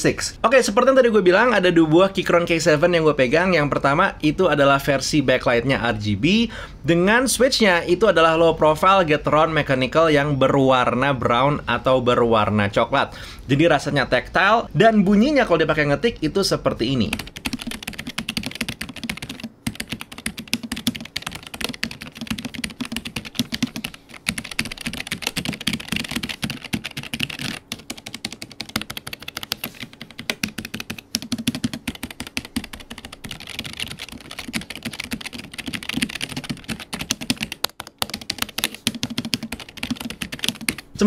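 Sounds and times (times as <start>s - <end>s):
mechanical keyboard typing: 17.1s - 40.9s.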